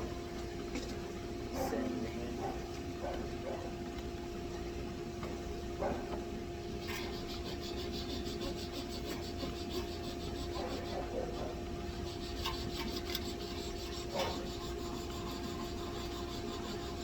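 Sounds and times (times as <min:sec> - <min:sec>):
steady low hum: 0:00.0 - 0:17.0
rasping scraping strokes: 0:06.8 - 0:17.0.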